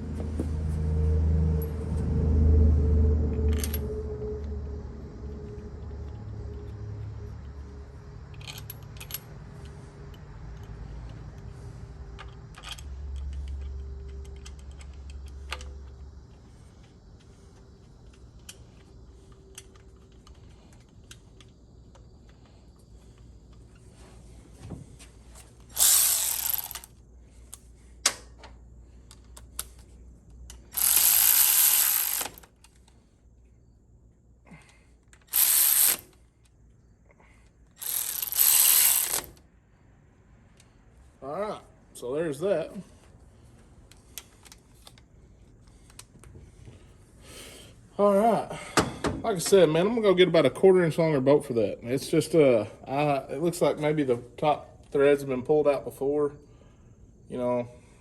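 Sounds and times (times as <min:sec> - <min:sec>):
ratchet ratcheting: 0:25.7 - 0:27.0, 0:30.5 - 0:32.8, 0:35.2 - 0:36.2, 0:37.8 - 0:39.4.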